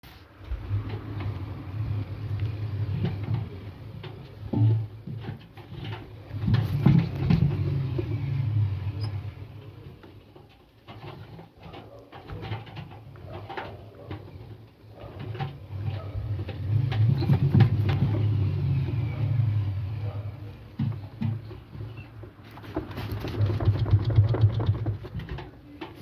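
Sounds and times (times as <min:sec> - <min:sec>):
rattle of clicks: 0:22.0 - 0:26.0.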